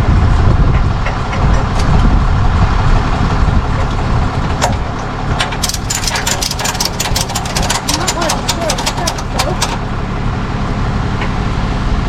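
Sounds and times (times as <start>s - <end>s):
truck engine idling: 0.0s - 11.9s
rapid sharp clicks: 5.4s - 9.9s.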